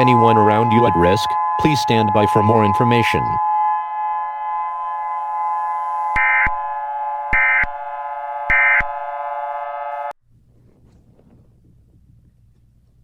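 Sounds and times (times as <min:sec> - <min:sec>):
sustained electronic chord: 0:00.0 - 0:10.1.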